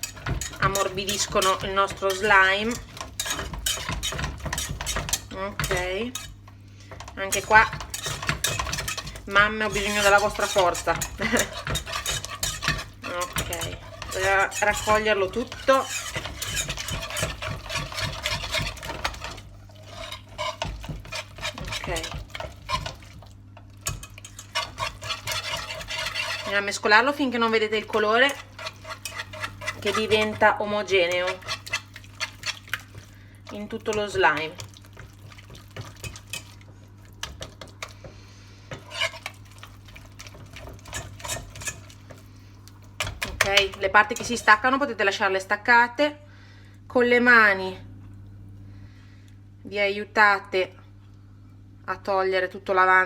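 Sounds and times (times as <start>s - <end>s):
hand whisk scraping thick slime: 0.0s - 6.3s, 7.1s - 23.2s, 23.8s - 26.8s, 27.7s - 36.4s, 38.7s - 39.4s, 40.2s - 41.9s.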